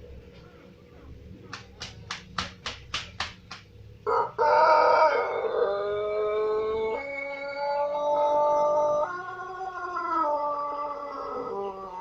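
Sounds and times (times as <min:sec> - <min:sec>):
wings clapping: 0:01.5 - 0:03.8
rooster crowing: 0:04.0 - 0:12.0.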